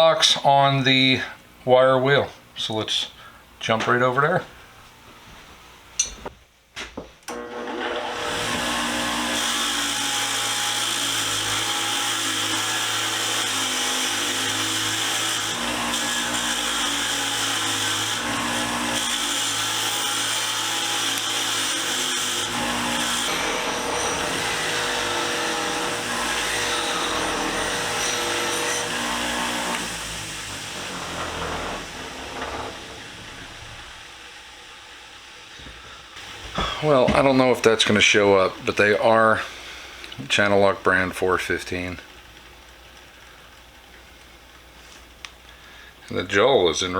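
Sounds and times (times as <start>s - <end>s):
wire wheel motor running: 7.3s - 34.3s.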